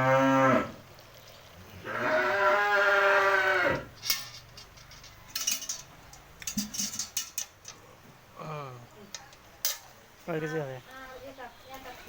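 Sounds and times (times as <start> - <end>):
cow mooing: 0.0 - 0.8, 1.8 - 3.9.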